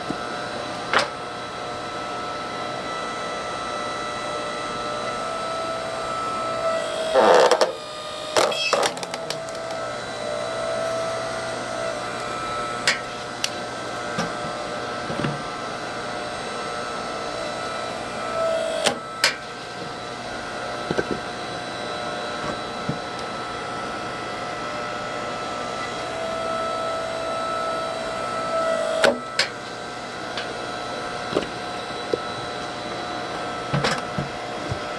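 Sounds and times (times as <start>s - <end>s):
hydraulic motor and pump humming: 0.0s - 34.9s
firewood cracking as it splits: 8.4s - 9.8s.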